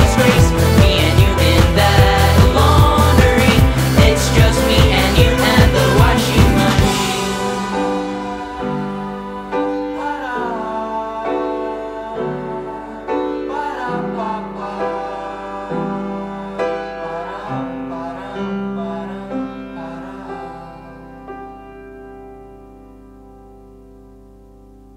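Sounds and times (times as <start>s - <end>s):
sustained instrumental chords: 0.0s - 11.7s.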